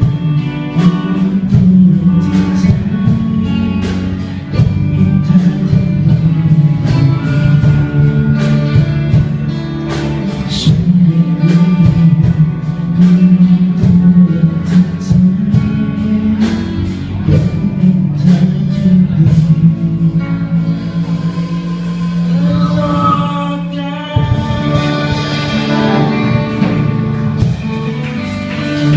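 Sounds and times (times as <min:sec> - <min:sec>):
guitar: 0:00.0 - 0:28.9
person singing: 0:00.0 - 0:28.9
drum beat: 0:24.2 - 0:28.9.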